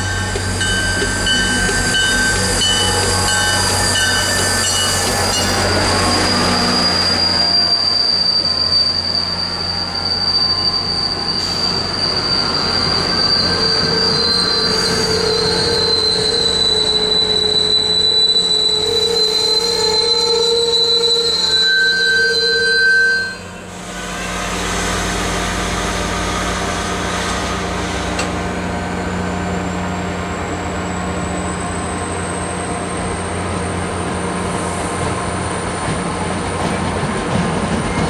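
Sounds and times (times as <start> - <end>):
train rumble: 0.0 - 21.5, 23.4 - 38.0
train wheels squealing on rails: 0.0 - 38.0.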